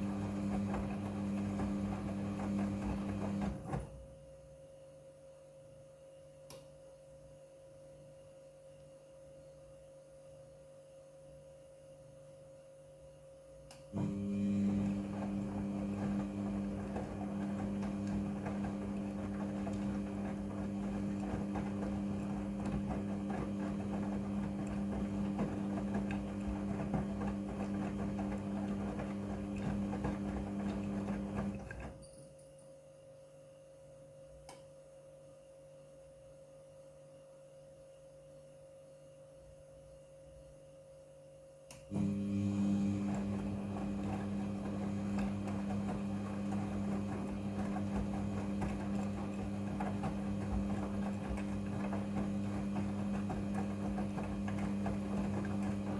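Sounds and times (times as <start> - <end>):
washing machine motor hum: 0.0 - 4.4, 13.9 - 32.0, 41.8 - 55.9.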